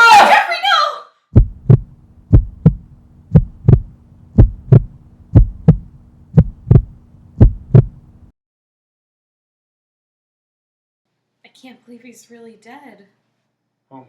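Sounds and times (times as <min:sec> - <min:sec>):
heartbeat double beats: 0:01.3 - 0:08.3
low hum: 0:01.4 - 0:08.3.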